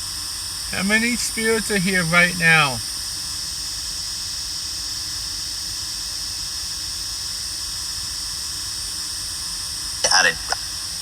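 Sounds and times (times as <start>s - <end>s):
steady high hiss: 0.7s - 3.0s.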